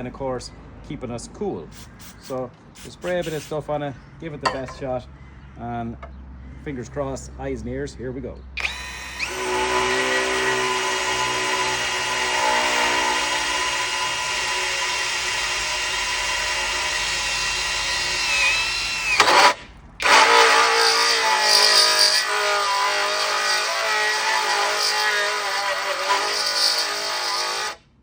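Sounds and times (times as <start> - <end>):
drill motor whining: 8.6 - 27.8
hole saw grinding on steel: 8.6 - 27.8.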